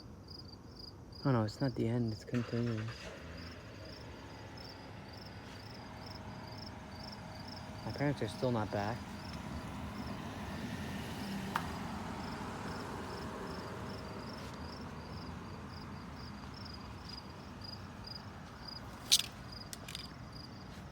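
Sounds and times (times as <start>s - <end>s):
insects chirping: 0.0s - 20.9s.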